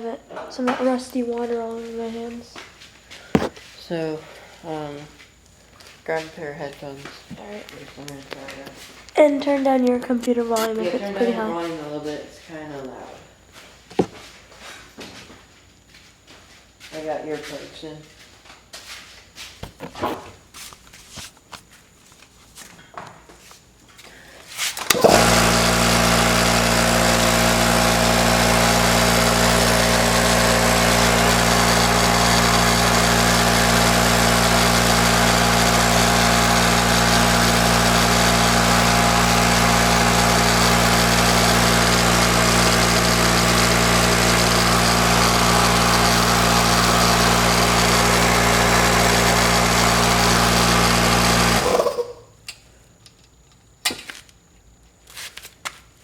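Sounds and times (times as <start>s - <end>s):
electric air compressor running: 3.3s - 3.6s, 24.8s - 52.3s.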